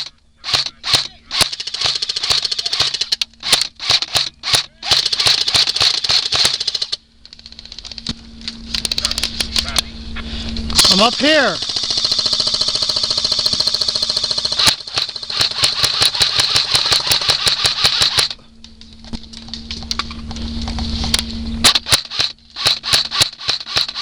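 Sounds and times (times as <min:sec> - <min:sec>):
airsoft guns firing full auto: 0:00.0 - 0:08.1, 0:10.8 - 0:18.4, 0:21.6 - 0:24.0
low steady hum: 0:00.0 - 0:24.0.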